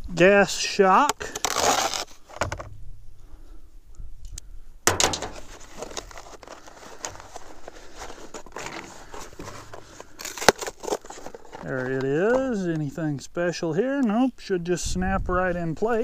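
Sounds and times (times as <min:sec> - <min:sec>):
rustling and crinkling packaging: 0:01.0 - 0:02.7, 0:04.9 - 0:13.0
sharp knocks: 0:04.9 - 0:05.6.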